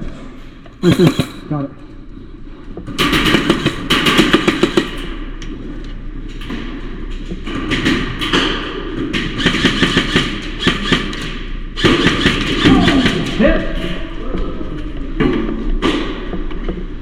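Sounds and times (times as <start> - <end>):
airsoft gun firing rapid bursts: 3.0 - 5.1, 9.2 - 13.5.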